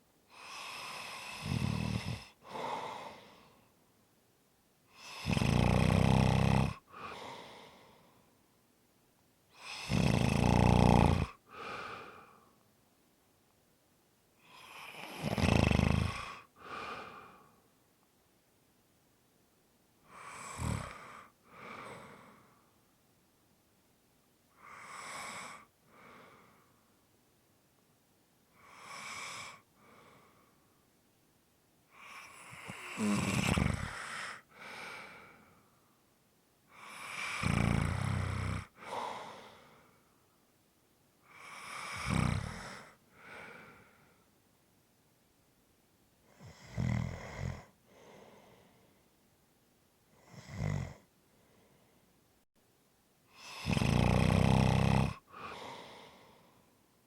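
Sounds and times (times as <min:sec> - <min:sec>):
person snoring: 0:00.3 - 0:03.6, 0:05.0 - 0:07.8, 0:09.6 - 0:12.4, 0:14.4 - 0:17.5, 0:20.1 - 0:22.5, 0:24.6 - 0:26.5, 0:28.6 - 0:29.7, 0:32.0 - 0:35.4, 0:36.7 - 0:39.8, 0:41.3 - 0:44.0, 0:46.3 - 0:48.5, 0:50.2 - 0:51.1, 0:53.3 - 0:56.4.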